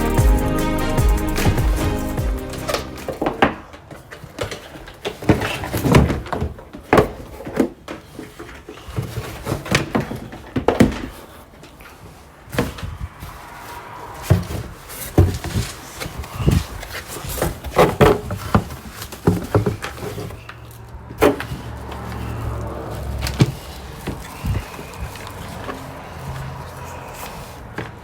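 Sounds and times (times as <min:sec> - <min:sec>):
knocks and thuds of handling: 0:14.2 - 0:20.5.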